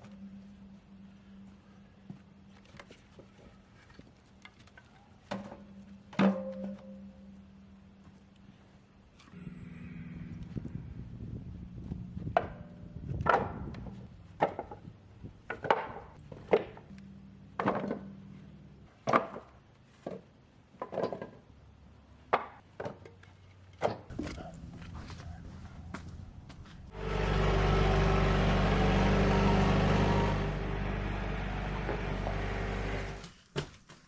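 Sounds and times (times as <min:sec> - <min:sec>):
steady low hum: 0:07.2 - 0:15.4.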